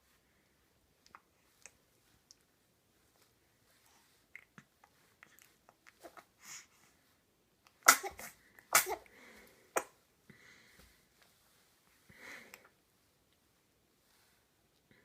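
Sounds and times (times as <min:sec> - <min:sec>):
soft rustles: 0:00.0 - 0:07.3, 0:08.3 - 0:15.0
person sneezing: 0:07.9 - 0:09.1.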